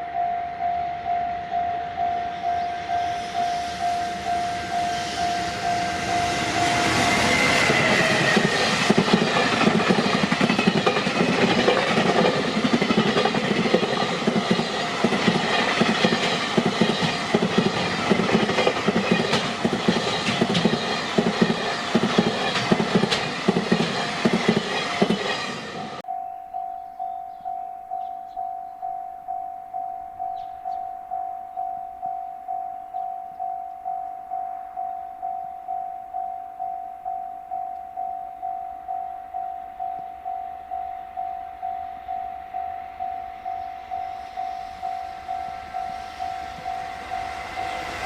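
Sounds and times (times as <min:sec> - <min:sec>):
freight train passing: 0:00.0 - 0:48.0
train wheels clacking on rails: 0:03.4 - 0:26.0, 0:42.2 - 0:48.0
level crossing bell ringing: 0:26.0 - 0:47.8.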